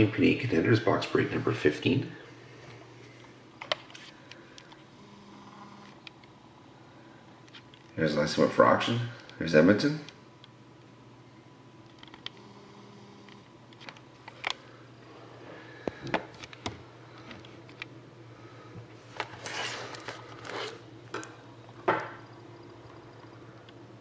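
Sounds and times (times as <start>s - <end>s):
faint low hum: 0.0s - 24.0s
cardboard rustling and scraping: 19.1s - 20.8s.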